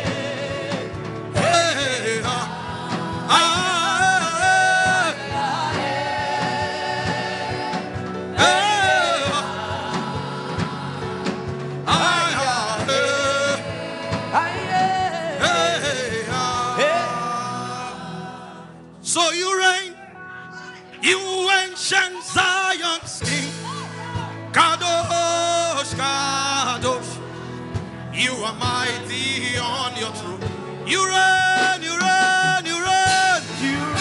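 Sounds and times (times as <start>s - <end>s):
sustained musical accompaniment: 0.0s - 34.0s.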